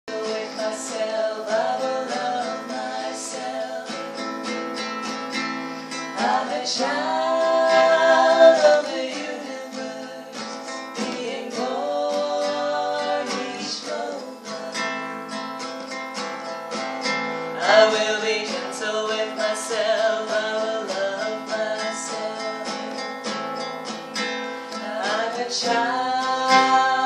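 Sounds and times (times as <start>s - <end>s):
person singing long notes: 0.0s - 4.2s, 5.9s - 15.2s, 24.6s - 27.0s
acoustic guitar strumming: 0.0s - 27.0s.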